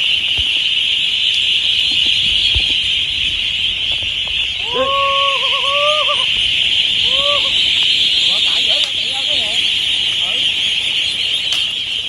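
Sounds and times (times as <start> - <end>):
wavering drawn-out call: 0.0 - 12.0
shrill high-pitched drone: 4.4 - 11.4.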